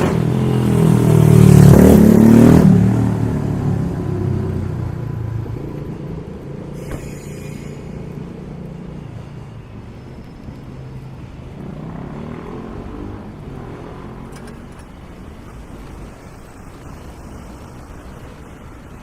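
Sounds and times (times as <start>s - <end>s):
low traffic rumble: 0.0s - 19.0s
vehicle engine passing: 11.5s - 14.6s.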